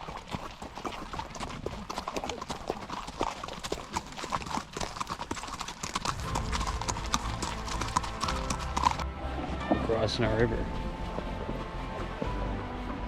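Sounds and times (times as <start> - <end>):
horse hooves clip-clopping: 0.0 - 13.0
low rumble: 6.0 - 13.0
background music: 6.1 - 13.0.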